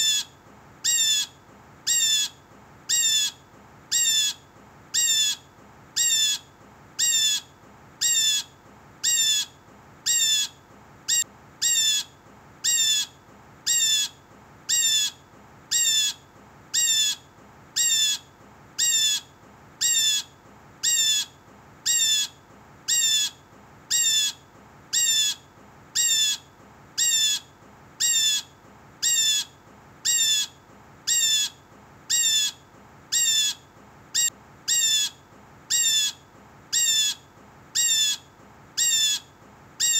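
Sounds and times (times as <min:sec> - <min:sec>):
blue jay calling: 0:00.0 - 0:05.4, 0:06.0 - 0:17.2, 0:17.8 - 0:18.2, 0:18.8 - 0:25.4, 0:26.0 - 0:26.4, 0:27.0 - 0:33.6, 0:34.2 - 0:37.2, 0:37.8 - 0:38.2, 0:38.8 - 0:39.9.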